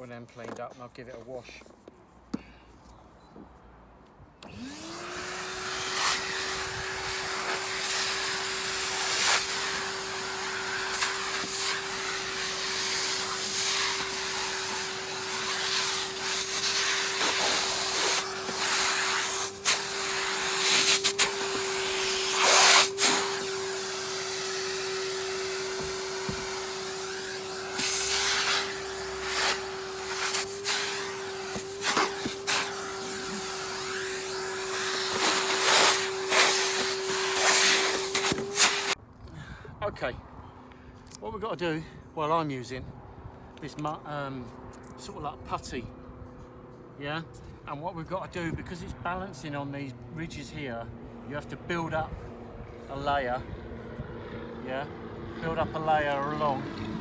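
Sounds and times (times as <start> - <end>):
vacuum cleaner motor whine: 4.4 - 39.0.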